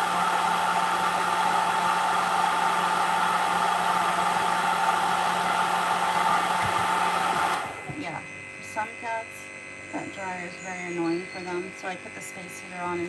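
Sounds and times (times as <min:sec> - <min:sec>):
pet dryer blowing air: 0:00.0 - 0:08.8.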